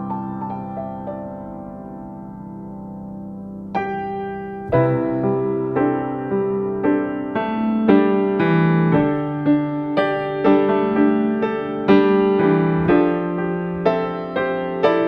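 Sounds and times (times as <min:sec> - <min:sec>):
calm piano melody: 0:00.0 - 0:15.0.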